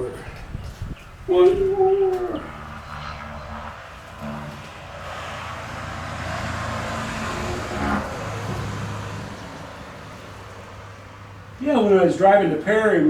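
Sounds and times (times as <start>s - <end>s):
steady low hum: 0.0s - 10.2s
road vehicle passing by: 0.0s - 12.5s.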